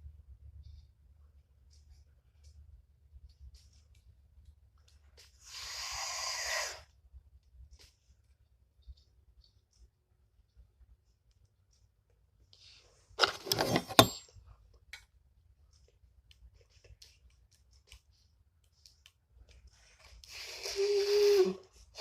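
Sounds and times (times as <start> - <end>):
saxophone parts clattering: 13.2 - 14.3.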